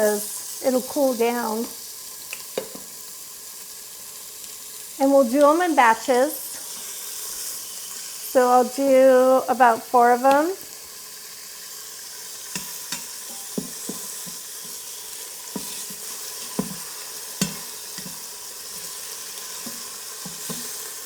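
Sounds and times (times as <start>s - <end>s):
chicken sizzling in oil: 0.0s - 21.0s.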